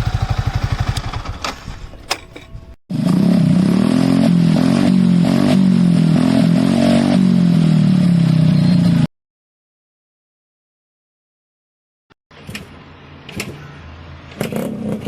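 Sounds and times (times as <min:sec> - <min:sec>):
motorcycle engine revving: 0:00.0 - 0:09.1.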